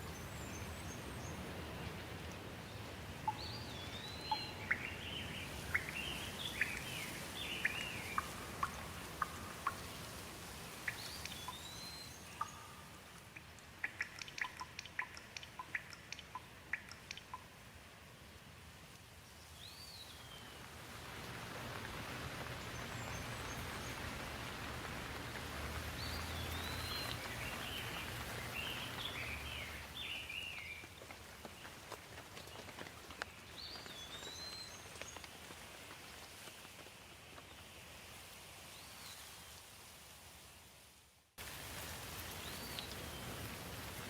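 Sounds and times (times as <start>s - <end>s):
rain falling on leaves: 0.0s - 44.0s
bird chirping: 3.2s - 10.1s, 10.8s - 17.5s, 26.0s - 30.9s.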